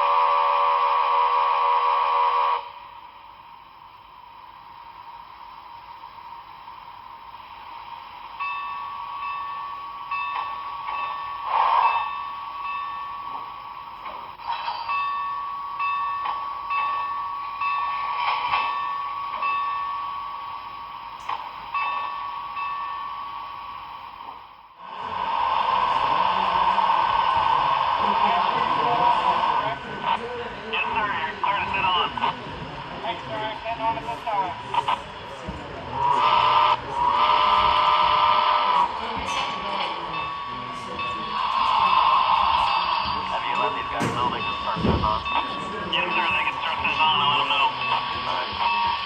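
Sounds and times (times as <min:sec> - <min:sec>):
ringing bell tone: 0:08.4 - 0:13.5, 0:14.4 - 0:20.4, 0:21.7 - 0:23.6, 0:39.0 - 0:49.0.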